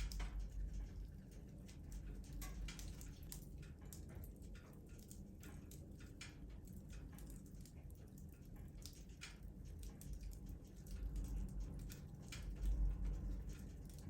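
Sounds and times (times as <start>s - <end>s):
low steady rumble: 0.0s - 14.0s
wood fire crackling: 0.0s - 14.0s.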